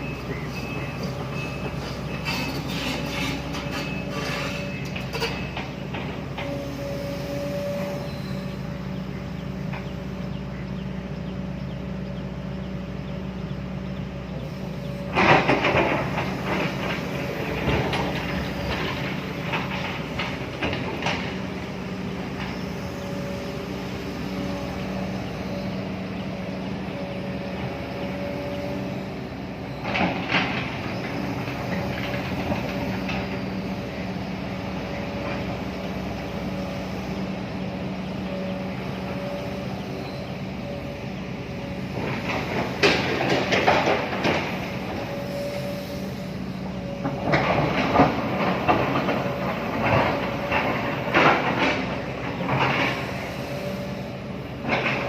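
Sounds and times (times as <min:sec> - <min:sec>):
diesel engine running: 0:00.0 - 0:55.0
metal clanking and knocks: 0:15.1 - 0:21.6, 0:41.9 - 0:45.1.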